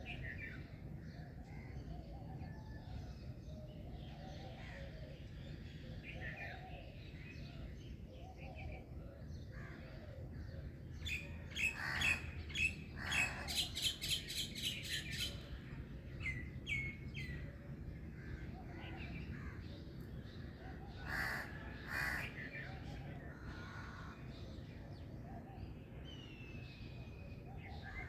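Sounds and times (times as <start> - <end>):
songbirds chirping: 0.0 - 28.0.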